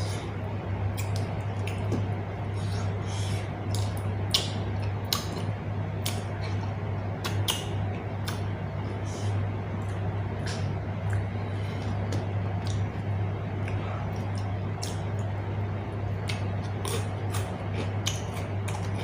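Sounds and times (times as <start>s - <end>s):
low hum: 0.0s - 19.0s
person chewing with lip smacks: 0.9s - 3.0s, 3.6s - 6.6s, 7.2s - 8.5s, 9.7s - 13.0s, 13.6s - 15.3s, 16.1s - 19.0s.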